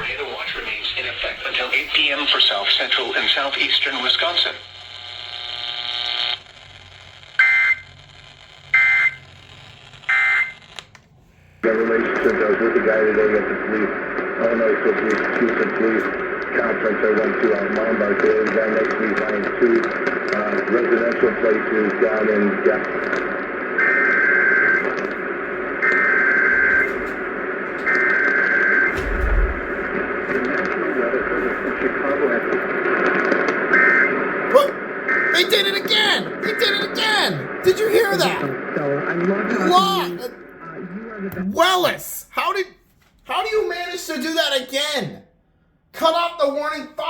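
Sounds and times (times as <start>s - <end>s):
radio hiss: 0.0s - 10.6s, 11.2s - 42.0s
harsh buzzing data bursts: 0.0s - 10.9s
steady buzzing tone: 4.4s - 11.6s, 28.7s - 30.8s
low thump: 28.9s - 30.7s.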